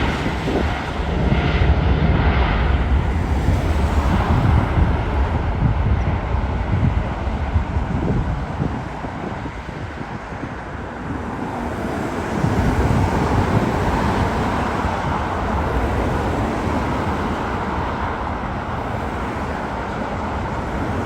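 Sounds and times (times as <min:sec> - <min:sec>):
jet engines roaring: 0:00.0 - 0:21.0.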